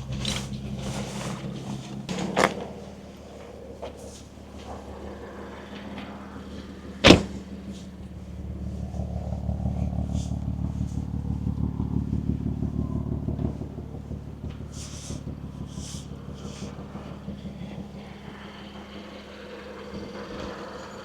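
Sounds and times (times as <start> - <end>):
car engine rumbling: 0.0 - 21.0
car door shutting: 7.0 - 7.8.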